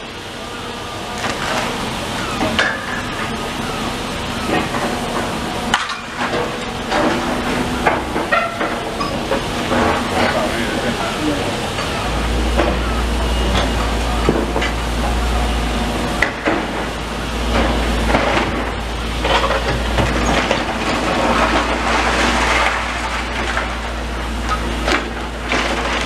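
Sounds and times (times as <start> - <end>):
low engine rumble: 0.0 - 26.0
debris knocking and clattering: 16.2 - 26.0.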